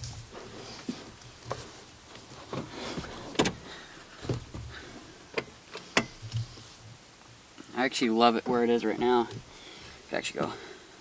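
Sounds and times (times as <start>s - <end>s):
car seat clicking on rails: 2.4s - 3.6s.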